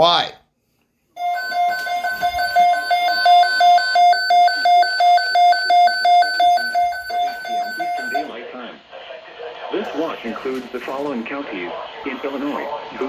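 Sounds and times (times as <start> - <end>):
rapid high alarm beeps: 1.2 - 8.3.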